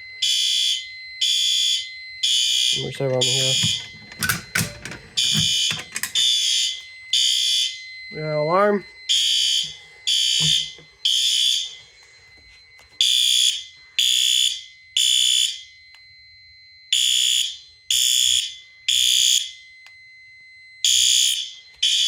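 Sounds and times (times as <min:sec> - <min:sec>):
fire alarm horns blasting: 0:00.0 - 0:22.0
faint steady high tone: 0:02.7 - 0:07.0.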